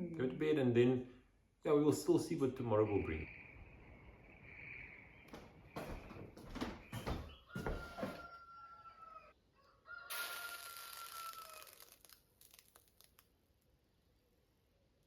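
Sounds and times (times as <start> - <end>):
rooster crowing: 7.0 - 11.8.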